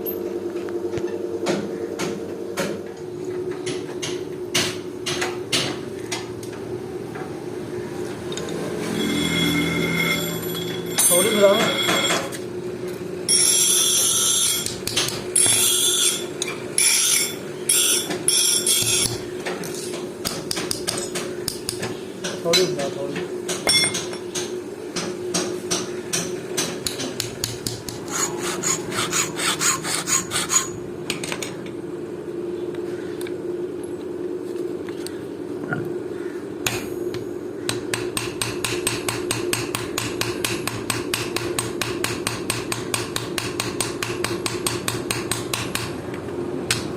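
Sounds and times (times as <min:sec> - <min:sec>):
steady low hum: 0:00.0 - 0:46.9
metal scraping strokes: 0:08.6 - 0:11.9, 0:27.9 - 0:30.8
hammer striking steel on anvil: 0:09.0 - 0:12.4, 0:23.5 - 0:24.2, 0:37.7 - 0:45.9.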